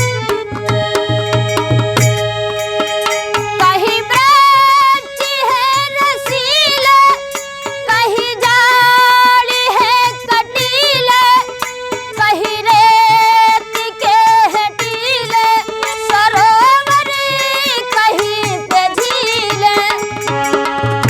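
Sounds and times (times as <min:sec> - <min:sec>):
woman singing folk melody: 0:03.6 - 0:20.2.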